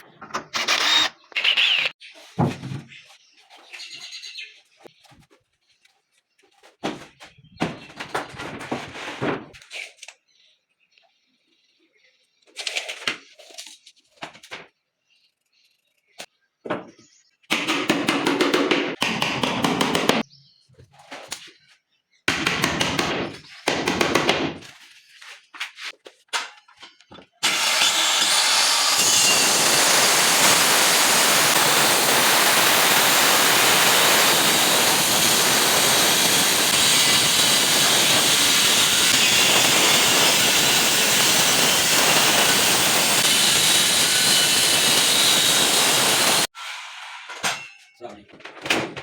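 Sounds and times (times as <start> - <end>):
electric power tool running: 0.4 - 2.0, 27.4 - 46.5.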